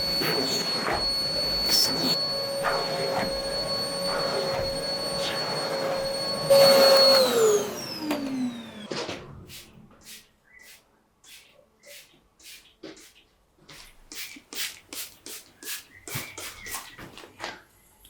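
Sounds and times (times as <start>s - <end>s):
electric appliance motor whine: 0.0s - 9.4s.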